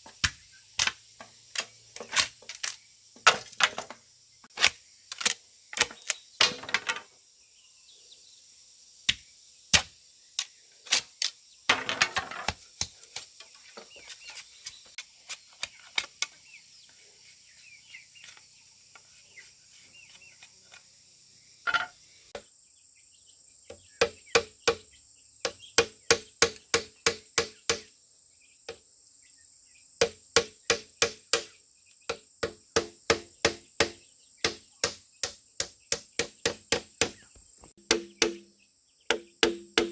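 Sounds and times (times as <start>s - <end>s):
hand tool striking bamboo: 0.0s - 4.0s, 4.6s - 7.0s, 9.1s - 9.9s, 25.4s - 27.9s, 30.0s - 37.2s, 37.8s - 38.5s, 39.1s - 39.9s
crickets chirring: 0.0s - 39.9s.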